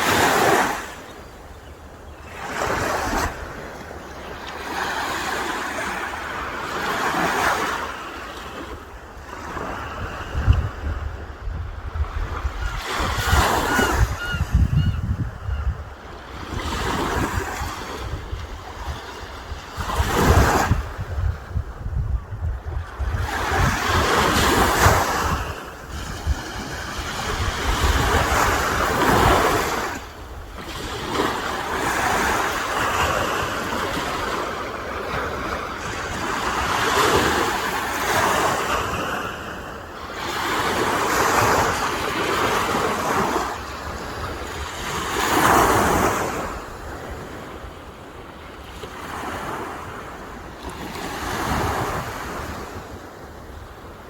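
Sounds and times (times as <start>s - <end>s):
sea waves breaking on shore: 0.0s - 54.0s
wind rumbling on microphone: 9.5s - 37.6s.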